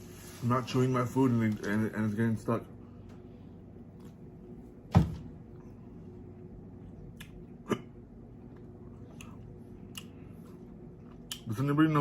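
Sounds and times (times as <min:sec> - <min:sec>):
man hiccuping: 0:07.6 - 0:08.0.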